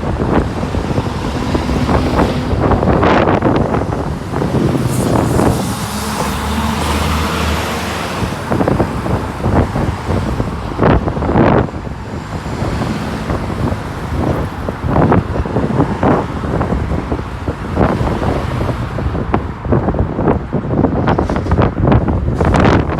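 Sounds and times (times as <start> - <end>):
diesel bus engine humming: 0.0 - 17.4
wind buffeting microphone: 0.0 - 22.9.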